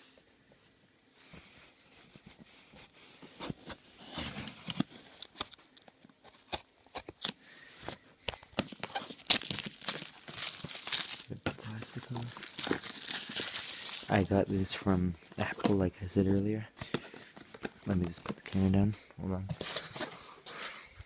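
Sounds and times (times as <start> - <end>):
plastic packaging crinkling: 4.5 - 7.4, 8.3 - 14.6.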